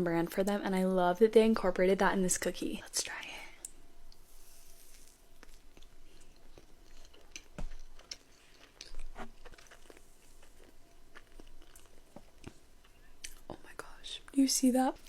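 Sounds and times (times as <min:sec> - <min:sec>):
biting and chewing cookie: 0:04.8 - 0:13.5.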